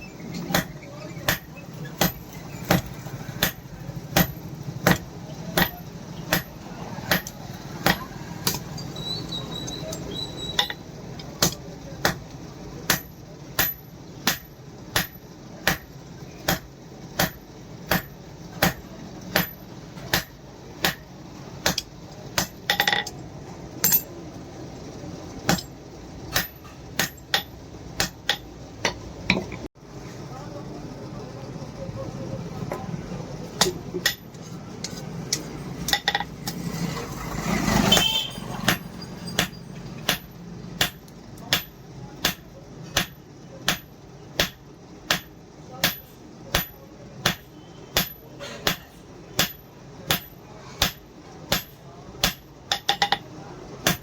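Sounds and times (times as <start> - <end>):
hammer striking steel on anvil: 0.5 - 8.7, 12.8 - 23.1, 25.5 - 29.5, 33.6 - 34.4, 37.9 - 54.0.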